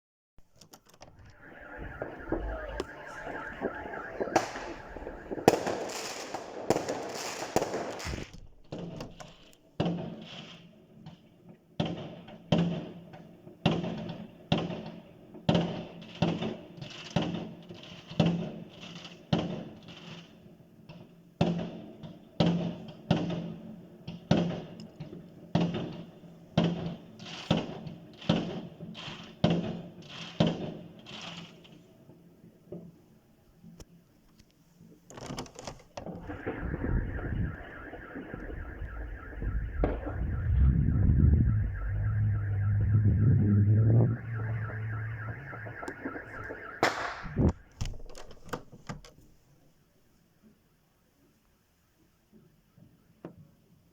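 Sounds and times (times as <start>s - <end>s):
car alarm pulsing: 1.1s - 8.2s, 36.0s - 48.0s
firecrackers crackling: 1.1s - 10.8s, 36.0s - 47.8s.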